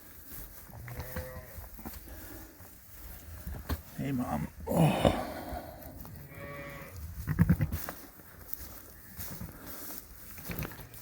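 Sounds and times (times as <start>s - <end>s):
sheep bleating: 4.4s - 7.8s.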